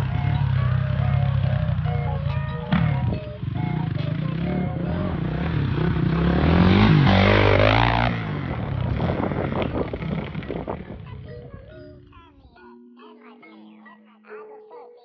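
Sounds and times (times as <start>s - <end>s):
dirt bike engine revving: 0.0s - 11.3s
background music: 0.0s - 15.0s.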